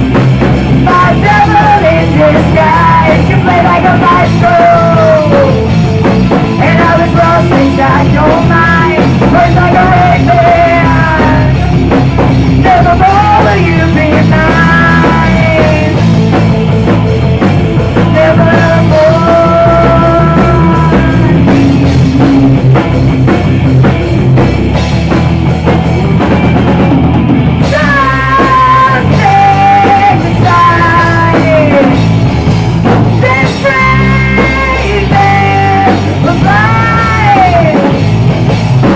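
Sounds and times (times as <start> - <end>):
live rock band playing: 0.0 - 38.9
singer's sliding vocals: 0.8 - 5.6, 6.6 - 11.8, 12.6 - 16.0, 18.0 - 21.6, 27.6 - 32.0, 33.2 - 38.0.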